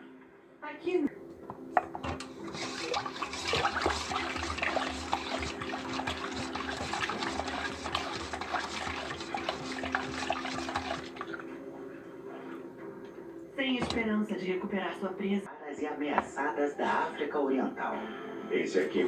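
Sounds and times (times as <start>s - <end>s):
water running from tap: 1.1s - 11.7s, 13.8s - 14.1s.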